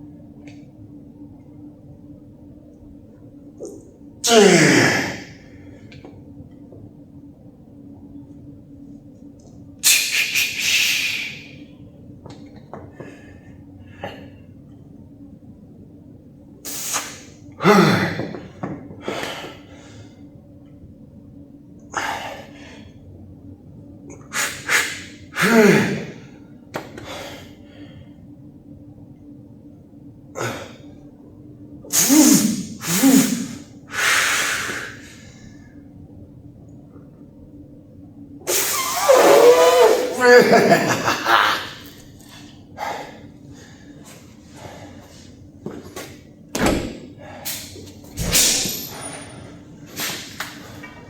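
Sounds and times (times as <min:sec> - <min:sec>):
man exhaling and grunting: 0:04.2 - 0:05.3, 0:25.4 - 0:26.2, 0:39.6 - 0:40.9.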